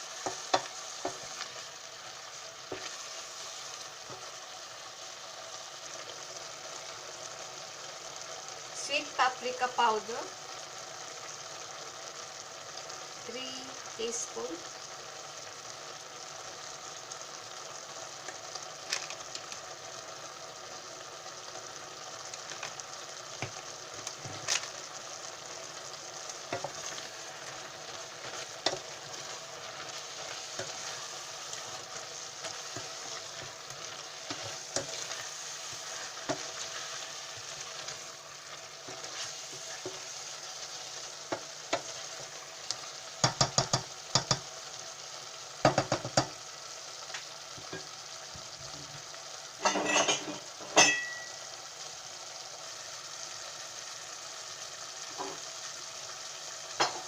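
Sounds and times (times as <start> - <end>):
meat and onions sizzling in pan: 0.0 - 57.0
spoon knocking against pan: 43.2 - 44.5, 45.6 - 46.3.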